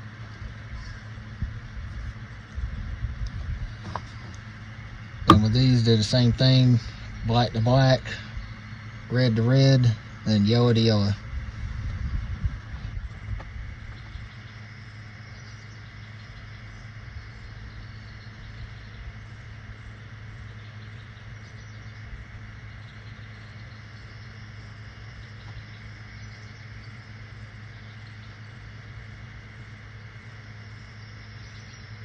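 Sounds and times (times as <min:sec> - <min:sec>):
low mechanical hum: 0:00.0 - 0:32.0.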